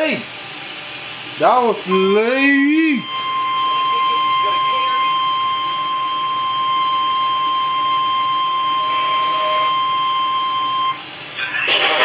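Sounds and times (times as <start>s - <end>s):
steady alert tone: 1.9s - 11.0s
loud noisy sound: 1.9s - 12.0s.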